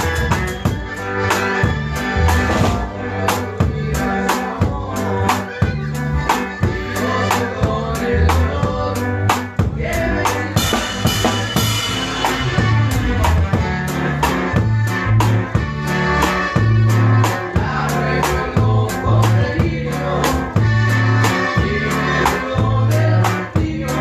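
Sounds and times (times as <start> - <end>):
bass line: 0.0 - 24.0
drum kit beat: 0.0 - 24.0
live band playing: 0.0 - 24.0.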